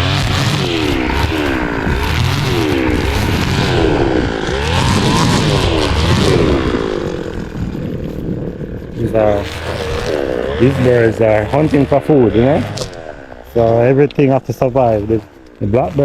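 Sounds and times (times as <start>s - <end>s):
tractor engine running: 0.0s - 16.0s.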